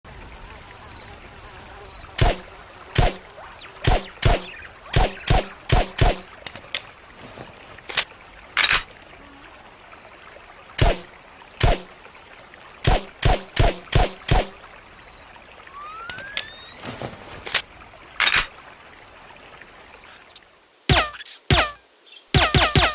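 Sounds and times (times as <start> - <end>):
faint clicks: 6.4 - 6.9.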